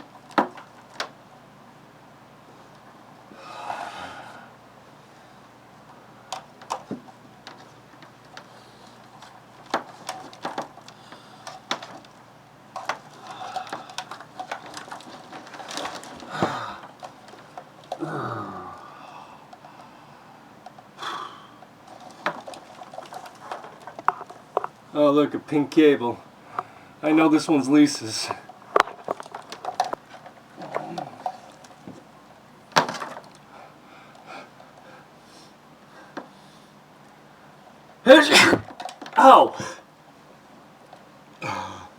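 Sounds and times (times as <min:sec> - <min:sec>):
cables and plugs clicking: 0:06.3 - 0:18.0
rustling: 0:07.5 - 0:18.0, 0:21.6 - 0:24.9.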